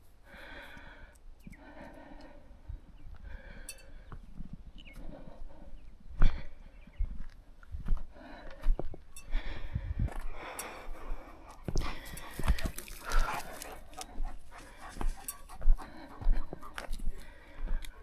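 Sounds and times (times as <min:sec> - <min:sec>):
footsteps on dry ground: 0:02.7 - 0:18.0
dog panting: 0:10.4 - 0:18.0.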